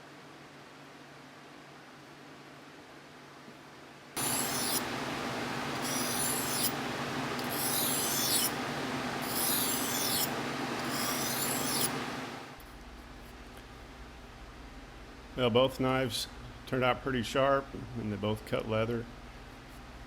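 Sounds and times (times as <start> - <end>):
steady scraping hiss: 4.2 - 4.9, 9.2 - 12.0
knife blade rasping strokes: 4.2 - 5.0, 5.7 - 8.6, 9.2 - 12.0.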